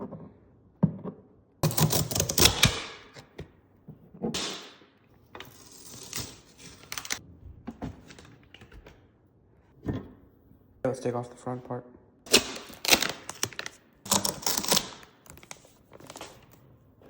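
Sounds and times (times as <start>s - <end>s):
packaging scraping and rustling: 5.4s - 7.2s, 12.3s - 16.6s
packaging knocks and clicks: 12.3s - 16.6s.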